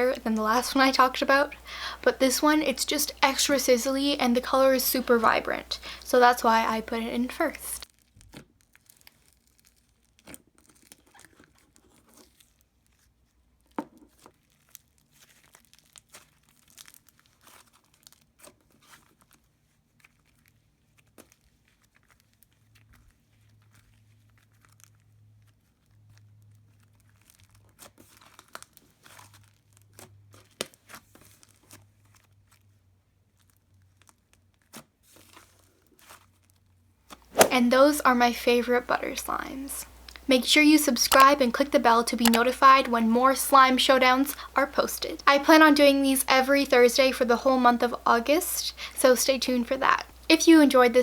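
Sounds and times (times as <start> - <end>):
slime crackling and popping: 7.8 - 36.6.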